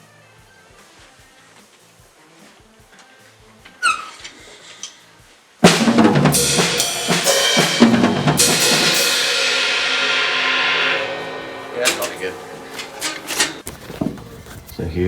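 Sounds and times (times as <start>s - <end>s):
crash cymbal ringing: 5.6s - 13.7s
drum kit hits: 5.6s - 14.1s.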